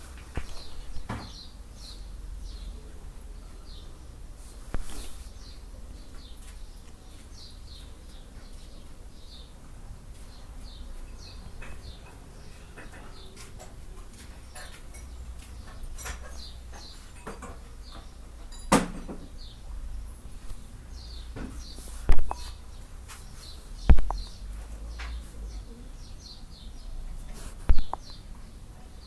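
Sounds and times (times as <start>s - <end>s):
faint bird chirps: 19.3s - 29.0s
sharp knocks: 21.4s - 22.5s, 23.9s - 24.2s.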